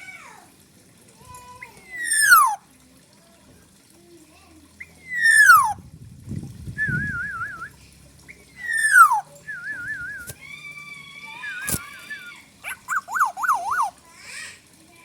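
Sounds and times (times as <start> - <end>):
oriole whistling song: 1.9 - 2.6, 4.8 - 5.8, 6.8 - 10.4, 11.3 - 14.0
fast bird trill: 2.0 - 2.6, 5.0 - 5.8, 8.6 - 9.3, 12.6 - 14.0.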